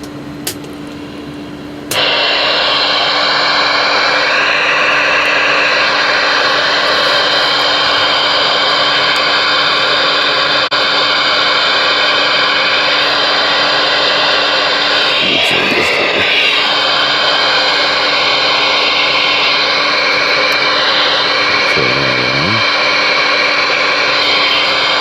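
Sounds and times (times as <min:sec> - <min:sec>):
radio static hiss: 0:14.6 - 0:23.0.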